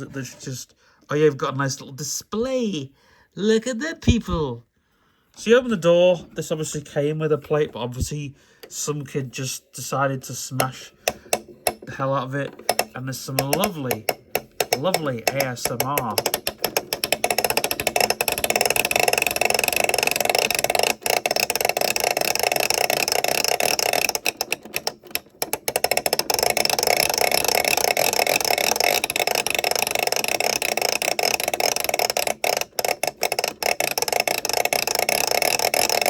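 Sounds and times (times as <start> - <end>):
plastic toy rattling clicks: 10.5 - 36.0.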